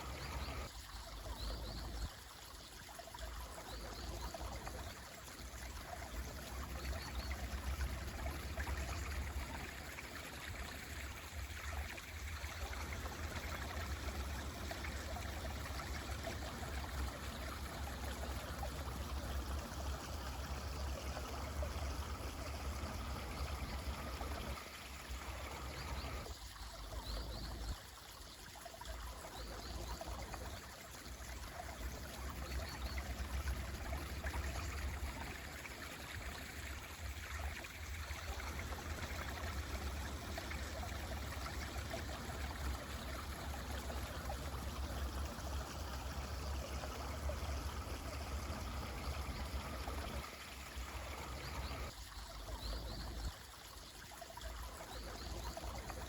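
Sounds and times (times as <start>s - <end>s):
mountain stream rushing water: 0.0s - 0.7s.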